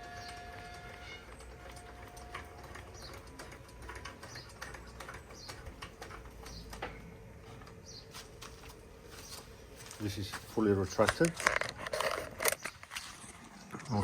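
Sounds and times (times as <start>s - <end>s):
crank gear clicking: 0.0s - 7.0s.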